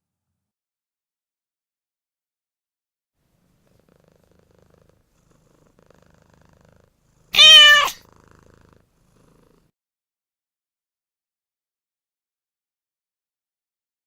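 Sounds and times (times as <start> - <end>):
cat purring: 3.3 - 9.7
cat meowing: 7.4 - 8.0.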